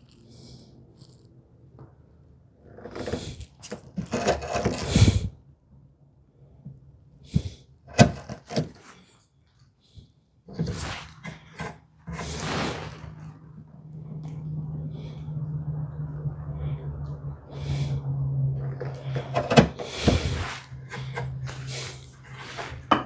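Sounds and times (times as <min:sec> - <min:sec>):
hand tool scraping wood: 0:02.8 - 0:05.3, 0:07.4 - 0:09.1, 0:10.5 - 0:13.5, 0:18.6 - 0:23.0.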